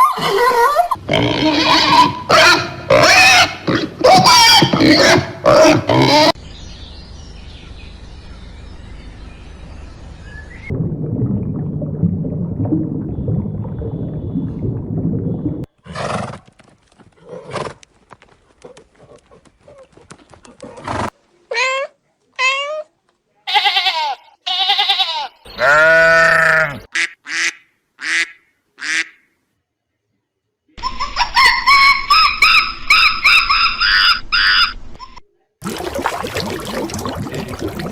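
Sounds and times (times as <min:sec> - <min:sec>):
low rumbling noise: 0:06.4 - 0:15.7.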